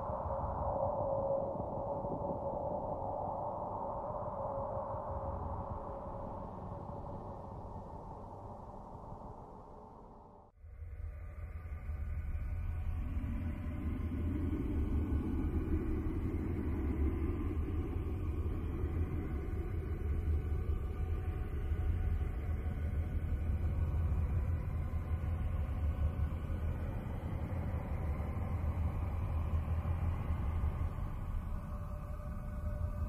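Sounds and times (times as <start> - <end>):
deep rumbling drone: 0.0 - 33.0.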